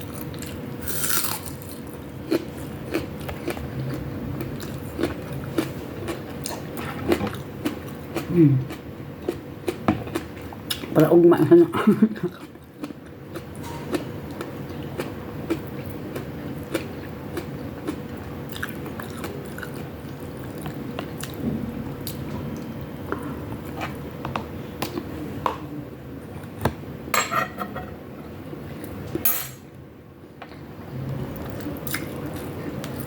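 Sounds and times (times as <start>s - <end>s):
faint steady hum: 0.0s - 33.0s
person chewing food: 0.1s - 10.9s, 12.2s - 21.4s.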